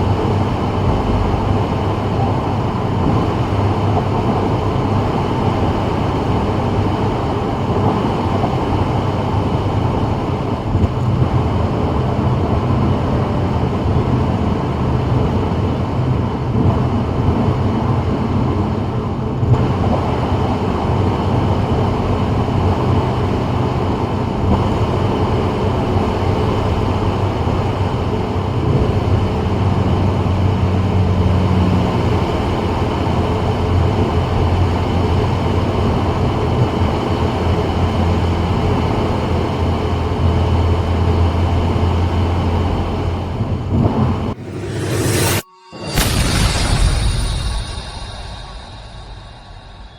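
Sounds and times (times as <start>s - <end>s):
low road drone: 19.0s - 49.9s.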